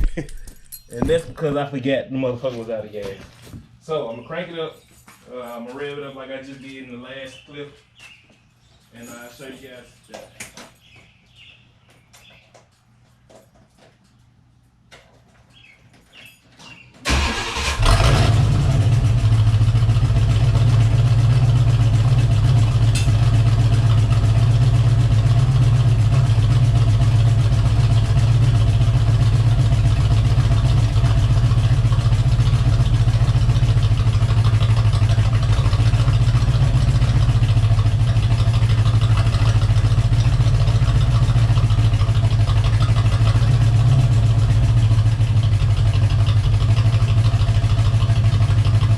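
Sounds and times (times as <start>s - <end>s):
engine tapping: 16.2s - 48.9s
car engine starting and idling: 17.0s - 48.9s.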